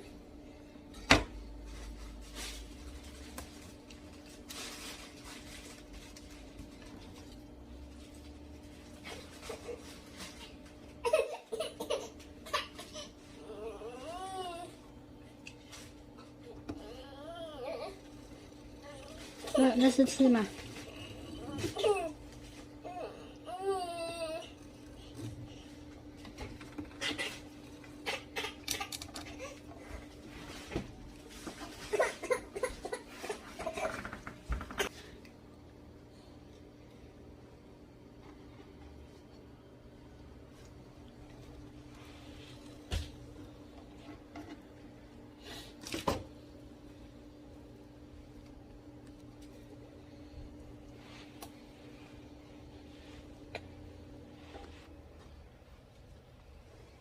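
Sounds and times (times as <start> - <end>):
steady low hum: 0.0 - 57.0
scraping and rustling: 1.6 - 10.8.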